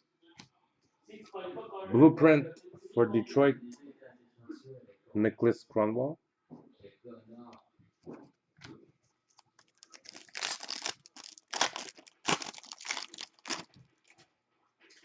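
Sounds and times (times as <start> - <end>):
wrapper tearing and crinkling: 9.6 - 14.2.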